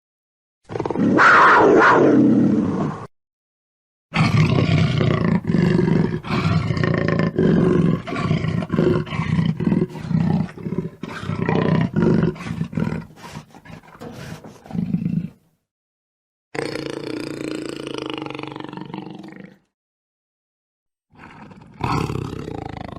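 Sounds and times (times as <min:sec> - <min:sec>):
jaguar roaring and growling: 0:00.7 - 0:03.1, 0:04.1 - 0:15.4, 0:21.1 - 0:22.9.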